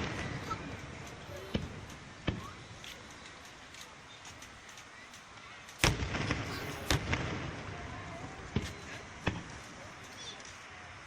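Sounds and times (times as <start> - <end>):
fireworks bangs: 0.0 - 4.6, 5.6 - 10.7.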